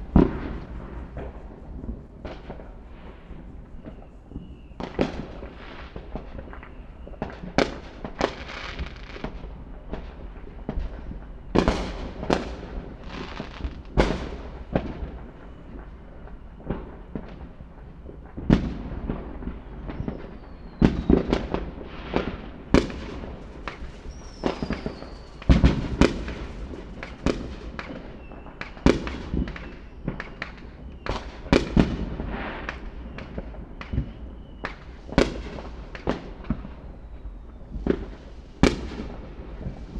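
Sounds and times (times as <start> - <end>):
fireworks bangs: 0.0 - 39.9
fireworks crackling: 0.0 - 39.9
rocket whistles: 3.4 - 9.3, 19.5 - 21.6, 22.8 - 31.9, 32.5 - 35.6.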